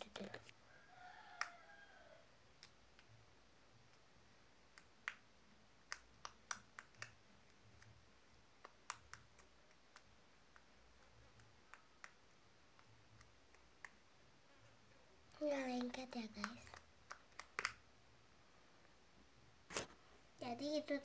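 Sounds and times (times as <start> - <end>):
slime squelching with clicks and pops: 4.7 - 14.2, 15.7 - 18.0.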